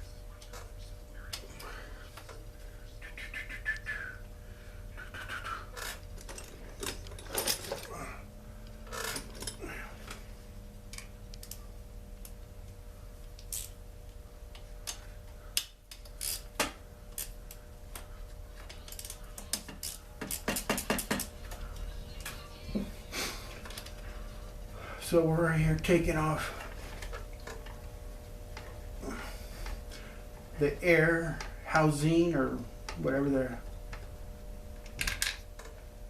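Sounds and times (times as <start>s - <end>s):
faint steady hum: 0.0s - 36.0s
metal and plastic parts clinking: 5.8s - 7.9s.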